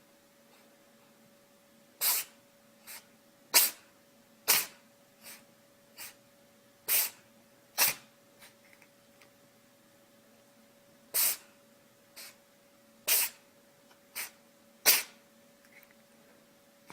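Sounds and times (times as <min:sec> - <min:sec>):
animal sneezing: 0:02.0 - 0:05.4, 0:06.0 - 0:06.2, 0:06.9 - 0:07.2, 0:07.8 - 0:08.6, 0:11.1 - 0:11.5, 0:12.2 - 0:12.4, 0:13.0 - 0:13.4, 0:14.1 - 0:15.2.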